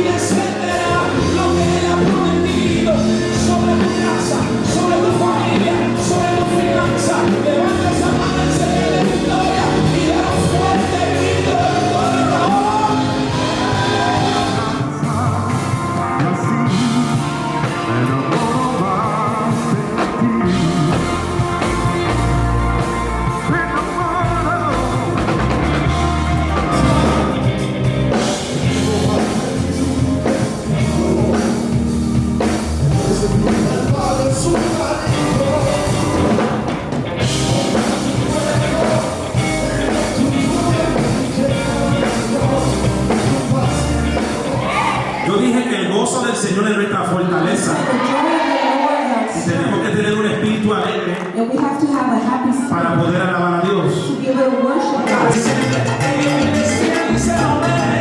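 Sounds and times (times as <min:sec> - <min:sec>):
person singing: 0:00.0 - 0:46.0, 0:54.2 - 0:58.0
band playing worship song: 0:00.0 - 0:58.0.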